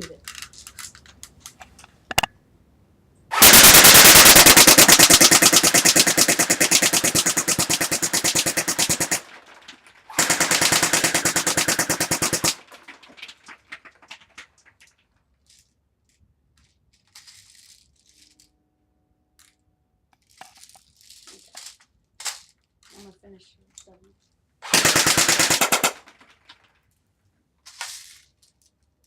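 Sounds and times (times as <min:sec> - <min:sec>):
faint clicks and handling noises: 0:00.0 - 0:02.3, 0:12.6 - 0:18.6, 0:19.4 - 0:24.5, 0:26.1 - 0:29.0
airsoft gun firing full auto: 0:03.3 - 0:12.9, 0:24.6 - 0:26.4.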